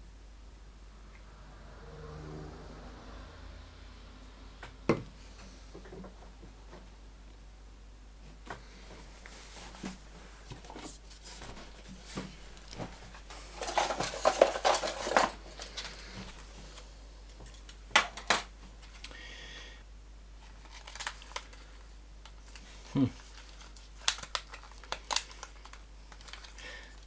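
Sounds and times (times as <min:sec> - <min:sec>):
packaging crinkling: 0:11.3 - 0:19.2, 0:20.4 - 0:27.0.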